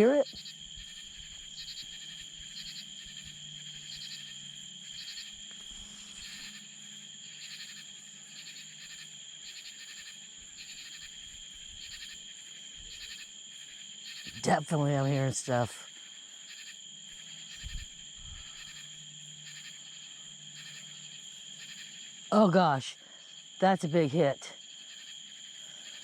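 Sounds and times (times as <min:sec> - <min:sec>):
insects buzzing: 0:00.0 - 0:26.0.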